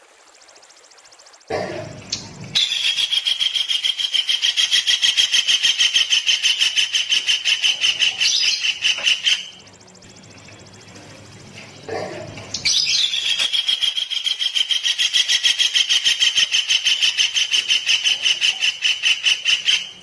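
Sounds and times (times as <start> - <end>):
songbird rapid trill: 2.6 - 9.6, 12.5 - 20.0.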